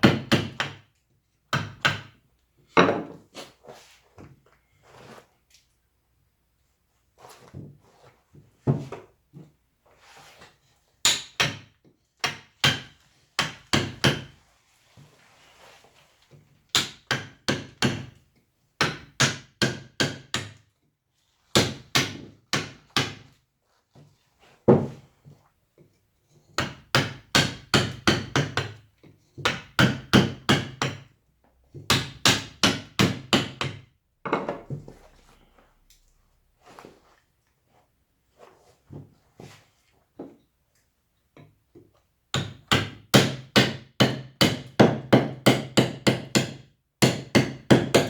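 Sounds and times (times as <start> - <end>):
mallet striking chisel into wood: 0.0 - 0.8, 1.5 - 2.2, 26.6 - 28.7, 29.4 - 31.0, 31.9 - 34.6, 42.3 - 48.0.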